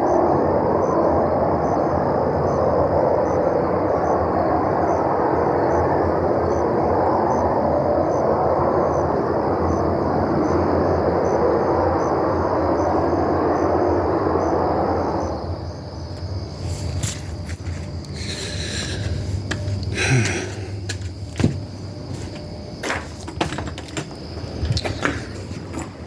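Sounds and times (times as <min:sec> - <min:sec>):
low roar from the sky: 0:00.0 - 0:17.4.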